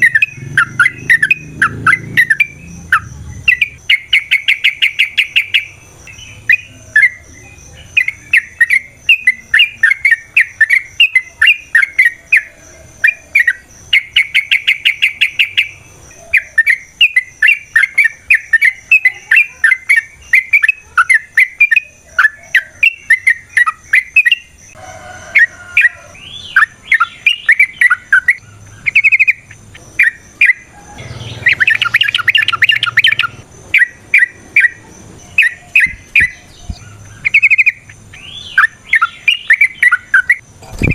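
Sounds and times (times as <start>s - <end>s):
bird singing chattering phrases: 0.0s - 24.8s, 25.4s - 40.9s
bird rattling trills: 26.5s - 40.9s.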